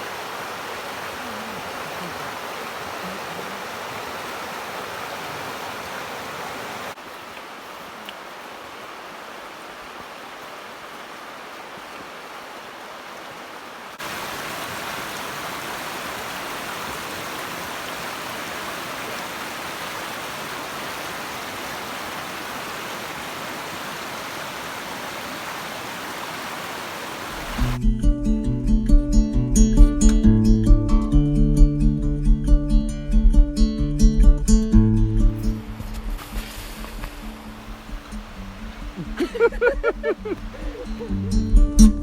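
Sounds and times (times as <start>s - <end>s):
waterfall rushing: 0.0s - 27.8s, 35.6s - 41.6s.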